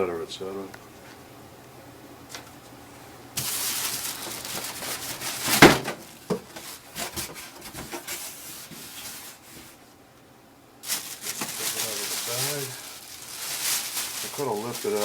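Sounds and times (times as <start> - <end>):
cardboard rubbing and scraping: 3.4 - 9.8.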